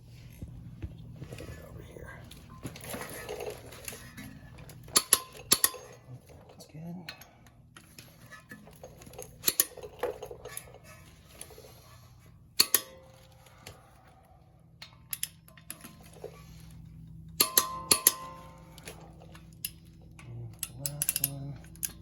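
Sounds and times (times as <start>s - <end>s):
torque wrench clicking on bolts: 4.9s - 6.0s, 12.6s - 12.9s, 17.4s - 18.9s, 20.6s - 22.0s.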